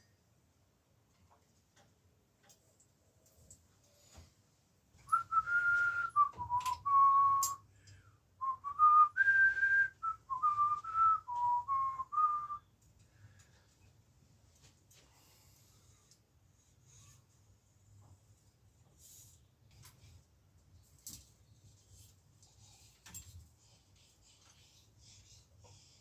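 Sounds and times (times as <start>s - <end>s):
person whistling a tune: 5.1s - 7.6s, 8.4s - 12.7s.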